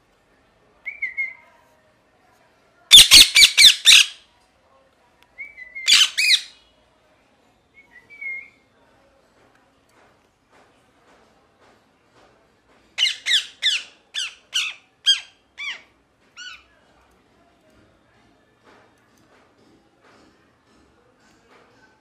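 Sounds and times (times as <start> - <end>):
parakeet whistling: 2.9 - 4.1, 5.8 - 6.5
parakeet screeching: 2.9 - 4.2, 5.9 - 6.5, 13.0 - 15.8.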